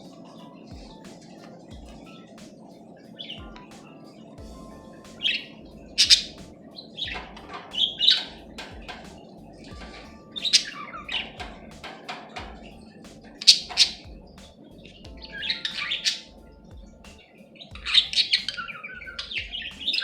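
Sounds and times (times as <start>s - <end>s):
budgerigars chirping: 3.1s - 20.0s.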